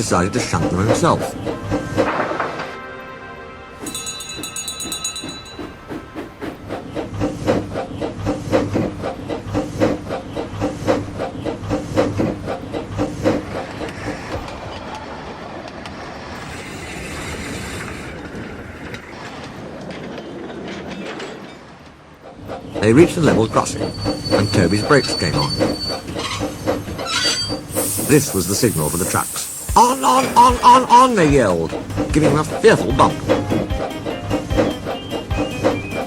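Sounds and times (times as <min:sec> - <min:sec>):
steam engine chuffing: 0:00.0 - 0:02.6, 0:03.8 - 0:14.8, 0:16.2 - 0:19.6, 0:22.2 - 0:36.0
rumble of rolling wheels: 0:07.1 - 0:27.5
steam hissing: 0:16.2 - 0:19.2, 0:22.8 - 0:36.0
steam whistle: 0:27.1 - 0:31.8.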